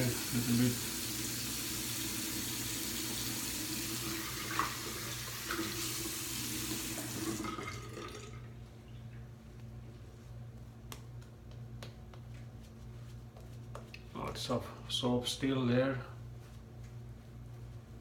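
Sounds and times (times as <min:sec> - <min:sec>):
tap water running into sink: 0:00.0 - 0:08.4.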